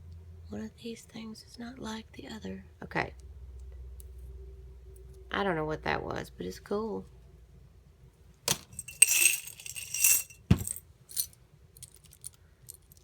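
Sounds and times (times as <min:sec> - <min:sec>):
buttons and beads clinking: 0:08.5 - 0:13.0
ringing metallic jingle: 0:08.8 - 0:11.3.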